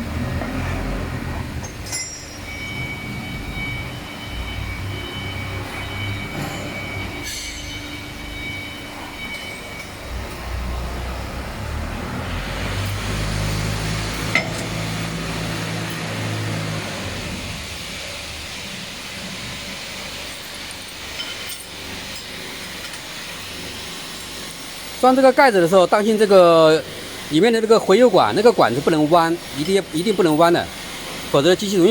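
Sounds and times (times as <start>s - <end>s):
machinery rumbling and humming: 0.0s - 31.9s
sharp metallic clink: 1.6s - 2.8s, 5.8s - 10.0s
high whining tones: 1.6s - 21.7s.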